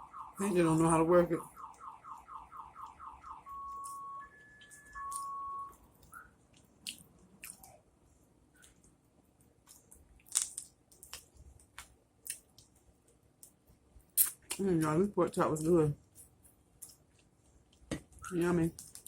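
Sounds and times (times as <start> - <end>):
car alarm tones: 0.0 - 6.3
biting and chewing: 8.6 - 14.6.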